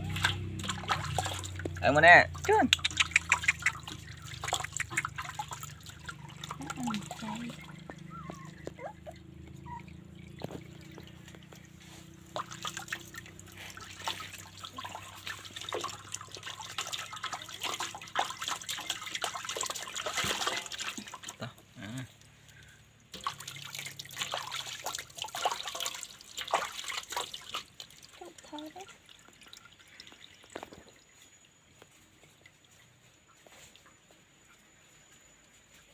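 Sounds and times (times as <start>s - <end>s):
wet rubbing: 0.0s - 21.2s
water splashing and dripping: 0.0s - 34.6s.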